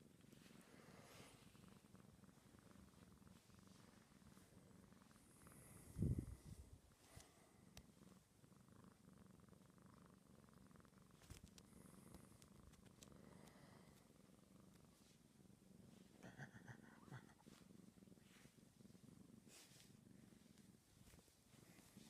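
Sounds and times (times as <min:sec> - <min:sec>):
kitten purring: 0:00.0 - 0:22.0
faint clicks: 0:11.1 - 0:14.9.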